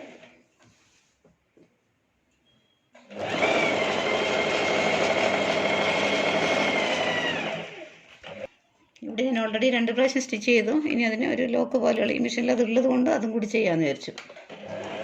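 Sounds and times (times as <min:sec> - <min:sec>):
sewing machine stitching: 0:03.0 - 0:08.5, 0:14.2 - 0:15.0.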